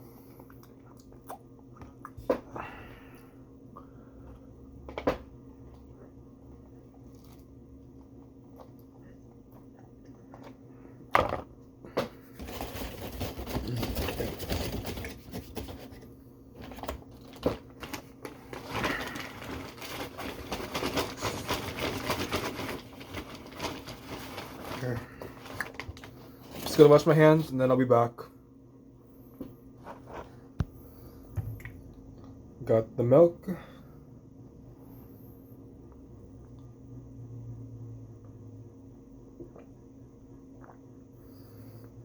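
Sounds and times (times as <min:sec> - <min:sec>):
steady low hum: 0:00.0 - 0:42.0
rustling and scraping: 0:12.4 - 0:26.9, 0:29.8 - 0:30.5.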